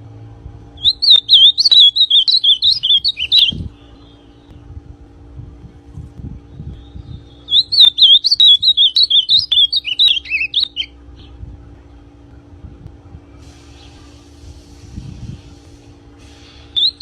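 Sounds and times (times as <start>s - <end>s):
bird singing warbling phrase: 0.8s - 4.6s, 6.6s - 11.4s, 16.7s - 17.0s.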